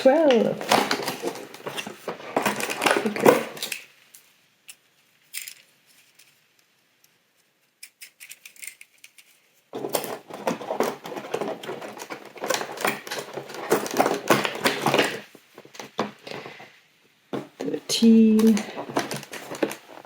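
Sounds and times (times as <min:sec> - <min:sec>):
packaging crinkling and rustling: 0:00.0 - 0:04.3, 0:08.4 - 0:16.7, 0:17.4 - 0:20.0.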